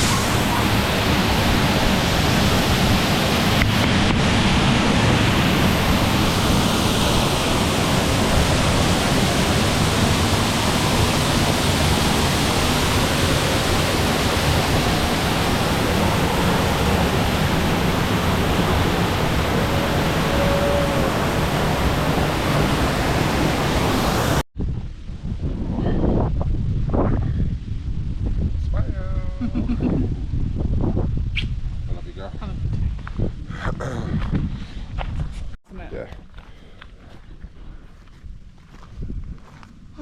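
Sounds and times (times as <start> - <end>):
waterfall rushing: 0.0 - 24.4.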